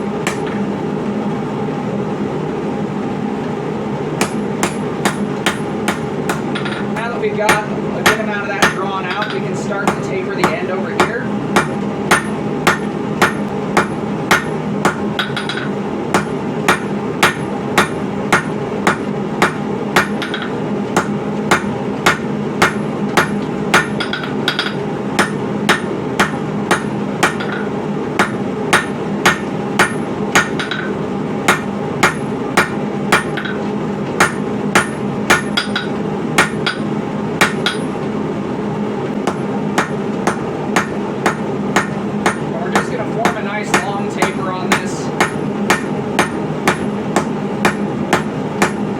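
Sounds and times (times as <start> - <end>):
steady low hum: 0.0 - 48.9
hammer beating hot steel on anvil: 0.2 - 0.6, 4.2 - 38.0, 39.2 - 48.9.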